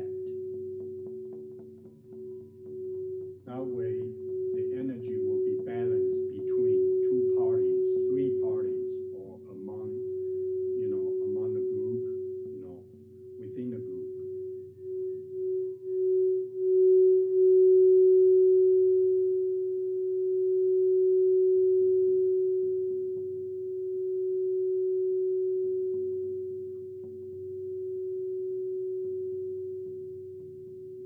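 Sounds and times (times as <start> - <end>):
crystal singing bowl ringing: 0.0 - 31.0.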